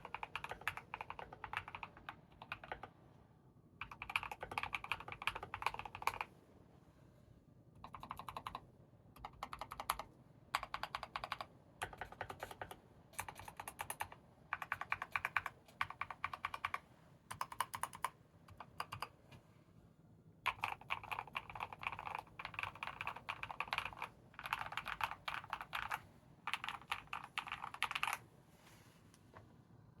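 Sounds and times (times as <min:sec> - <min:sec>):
mechanical keyboard typing: 0:00.0 - 0:02.9, 0:03.8 - 0:06.3, 0:07.8 - 0:08.6, 0:09.2 - 0:19.2, 0:20.5 - 0:28.2.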